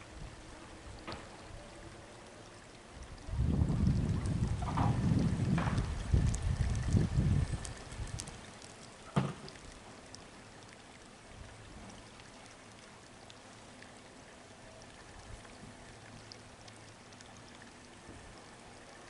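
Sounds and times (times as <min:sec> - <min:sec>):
light ticks: 0:04.6 - 0:11.2, 0:14.8 - 0:19.0.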